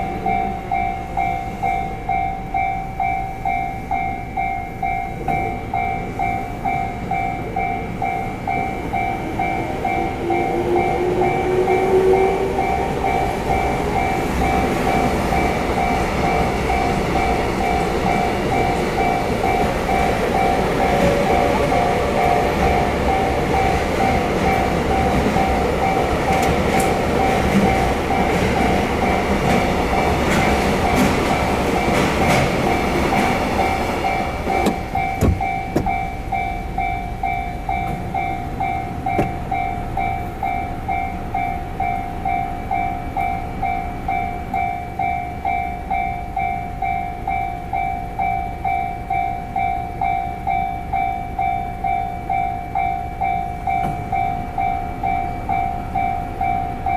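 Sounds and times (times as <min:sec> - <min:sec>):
level crossing alarm ringing: 0:00.0 - 0:56.9
train rumbling and clattering: 0:00.0 - 0:56.9.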